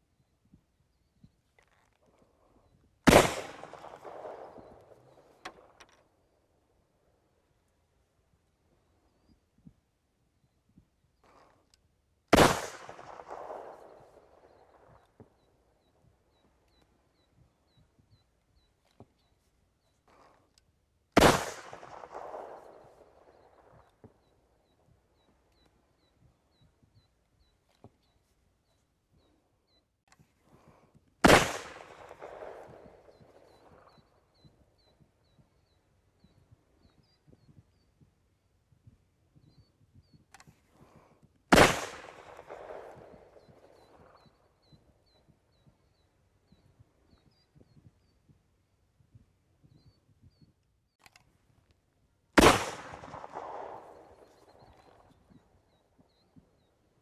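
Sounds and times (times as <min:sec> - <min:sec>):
flare pistol shot with echo: 0:03.0 - 0:05.8, 0:12.3 - 0:15.0, 0:21.2 - 0:23.9, 0:31.2 - 0:34.0, 0:41.5 - 0:44.3, 0:52.4 - 0:55.8.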